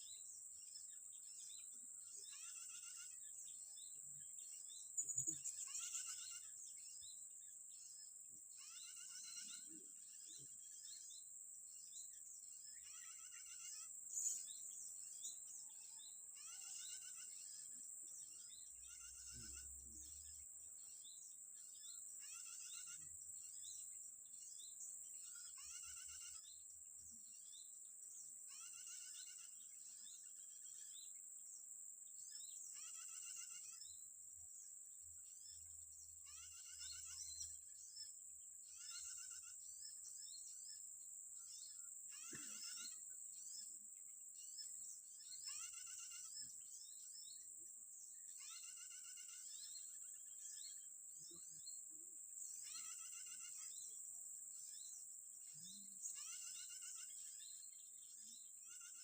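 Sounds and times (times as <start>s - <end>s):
insects buzzing: 0.0s - 59.0s
bird chirping call: 41.4s - 43.7s, 54.6s - 59.0s.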